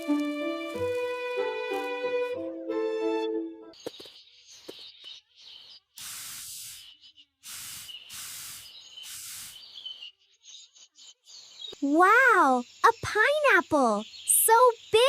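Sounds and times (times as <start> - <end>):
hissing spray bursts: 5.9 - 10.0.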